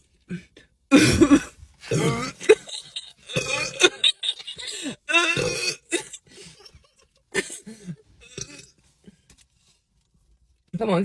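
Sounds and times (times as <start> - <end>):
person burping: 0.3 - 6.8, 8.2 - 8.8.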